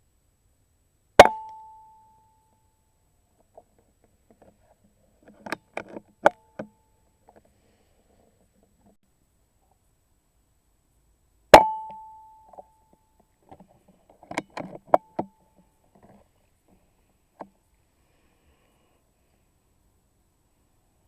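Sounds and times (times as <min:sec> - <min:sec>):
air rifle shot with metallic ring: 0:01.2 - 0:02.2, 0:11.6 - 0:12.4
rifle action clicks and knocks: 0:05.2 - 0:06.7, 0:13.5 - 0:15.4.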